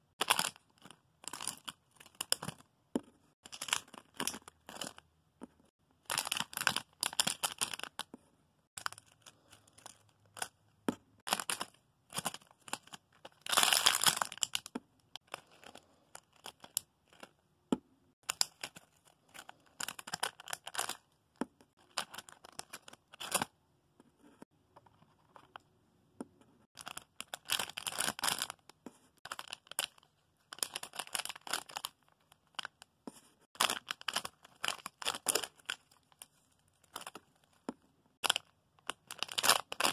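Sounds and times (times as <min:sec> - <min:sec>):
plastic bags crinkling: 0:29.3 - 0:32.8, 0:33.6 - 0:36.2, 0:38.2 - 0:39.9.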